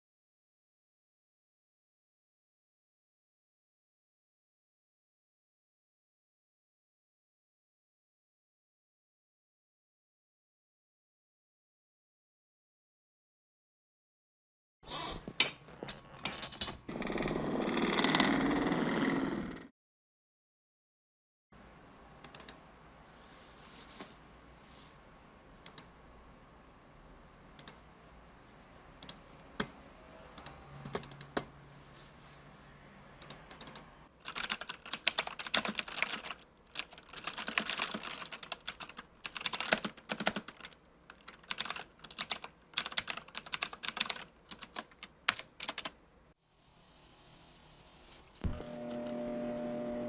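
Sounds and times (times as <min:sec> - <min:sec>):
typing on a keyboard: 0:33.2 - 0:45.9.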